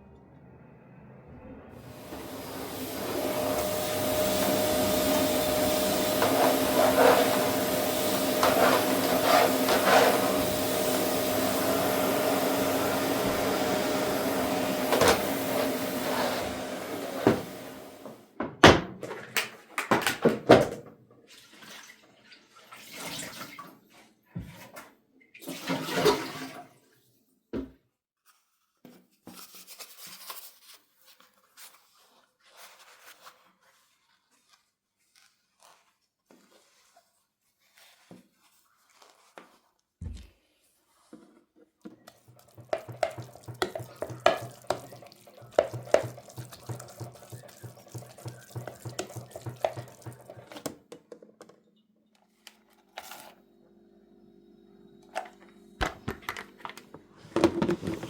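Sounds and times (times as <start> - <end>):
water running: 1.8 - 23.9, 41.9 - 50.9.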